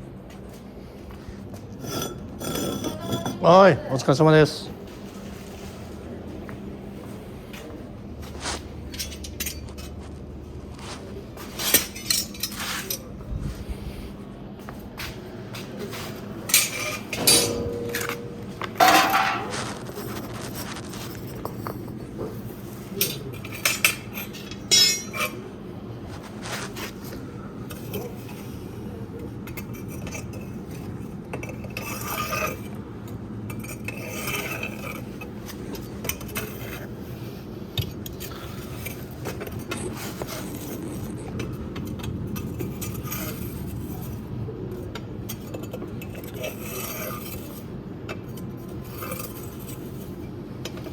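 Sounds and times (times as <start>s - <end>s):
scraping ash in fireplace: 8.2s - 14.2s, 15.0s - 28.5s, 38.0s - 44.3s
metal tool clinking: 16.5s - 19.8s, 23.0s - 25.3s.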